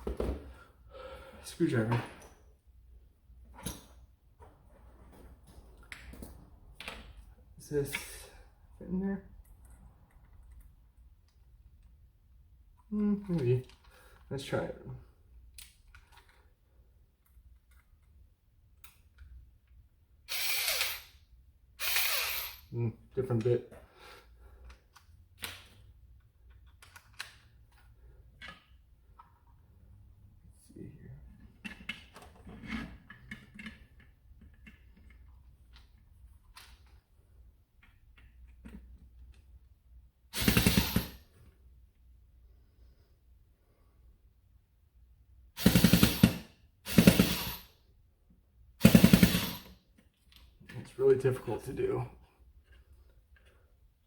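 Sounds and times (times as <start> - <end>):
electric screwdriver spinning: 20.3 - 21.1, 21.8 - 22.6
power screwdriver running: 20.3 - 21.1, 21.8 - 22.6, 40.4 - 41.1, 45.6 - 47.6, 48.8 - 49.7
small parts clicking and tapping: 24.6 - 27.7.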